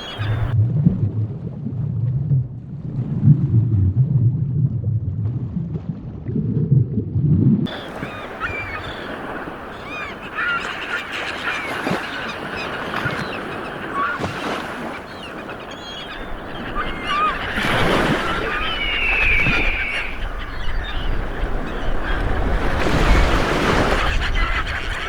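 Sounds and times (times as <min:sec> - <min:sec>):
birds chirping and calling: 0:00.0 - 0:00.6, 0:07.7 - 0:25.0
low rumble of wind or surf: 0:00.0 - 0:25.0.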